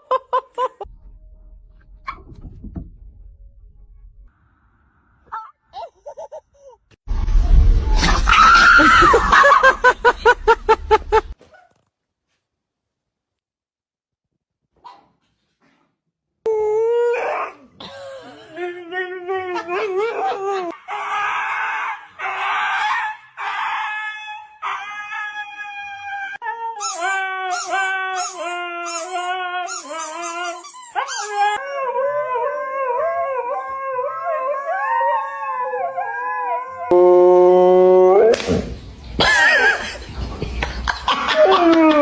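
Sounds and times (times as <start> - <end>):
dog howling and whining: 16.5 - 17.7, 18.5 - 38.4.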